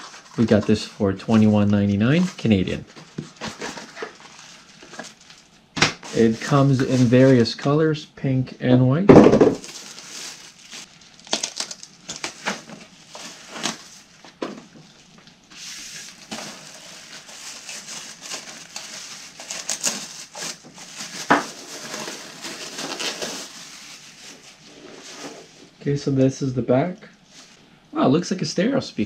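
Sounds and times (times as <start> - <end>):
packaging crinkling and rustling: 0.0 - 7.5, 9.6 - 25.4.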